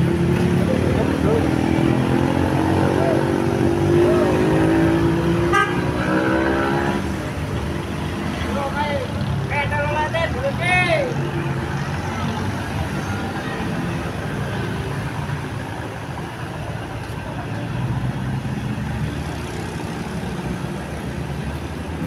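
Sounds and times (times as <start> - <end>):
bus engine running: 0.0 - 5.7
road traffic noise: 0.0 - 22.0.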